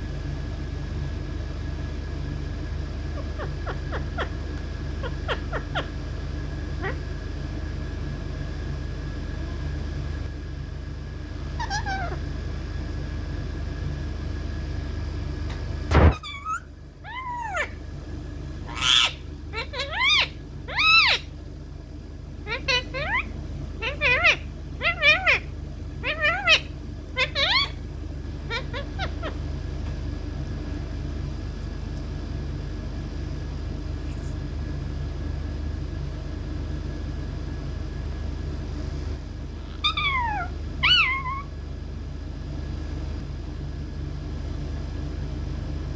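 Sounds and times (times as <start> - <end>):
steady low hum: 0.0 - 45.9
parrot calling and screeching: 3.1 - 6.0, 6.8 - 7.1, 11.6 - 12.3, 16.0 - 17.8, 18.6 - 21.3, 22.4 - 27.8, 28.5 - 29.4, 39.6 - 41.5.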